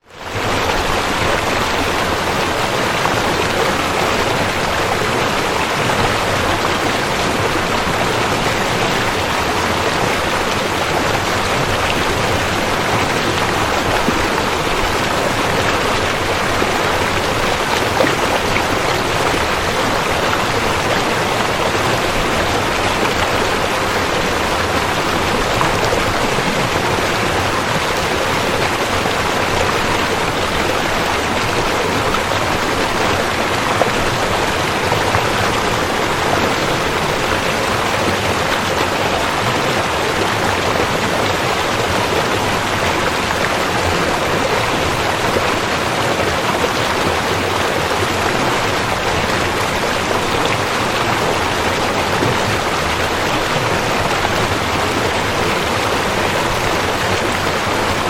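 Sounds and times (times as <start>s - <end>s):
river water flowing: 0.0s - 58.0s.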